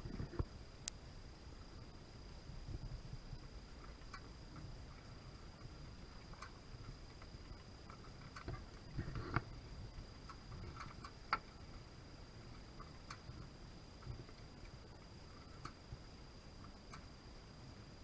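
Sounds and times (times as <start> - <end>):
clicks and knocks from rigging: 3.8 - 11.8, 12.4 - 16.0.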